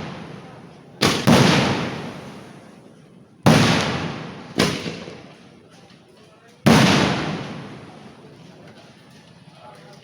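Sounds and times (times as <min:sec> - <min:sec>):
firework blasts with echo: 0:00.0 - 0:05.7, 0:06.6 - 0:08.6.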